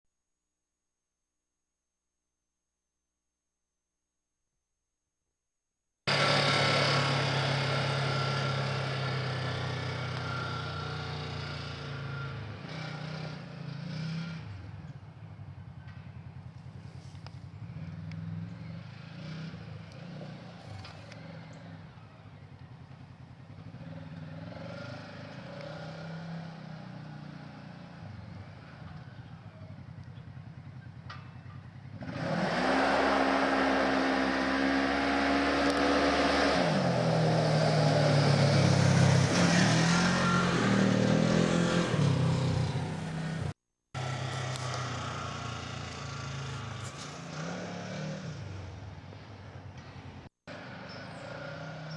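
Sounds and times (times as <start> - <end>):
engine revving: 6.1 - 14.8, 17.7 - 22.0, 23.5 - 28.0, 31.9 - 48.9, 50.5 - 51.9.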